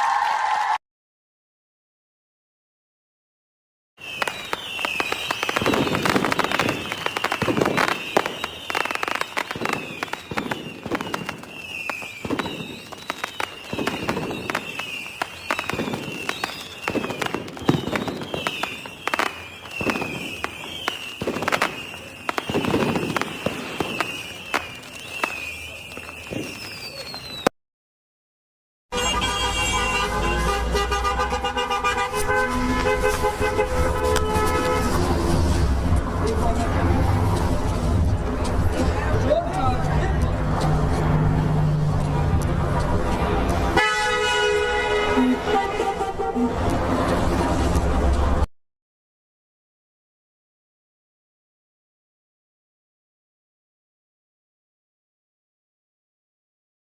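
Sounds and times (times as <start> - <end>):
traffic rumble: 4.0 - 27.4, 28.9 - 48.5
firework falling whistle: 4.0 - 27.5
fireworks bangs and crackling: 4.0 - 27.5, 29.0 - 43.9, 44.7 - 48.5
car horns honking: 28.9 - 35.2, 43.7 - 46.7.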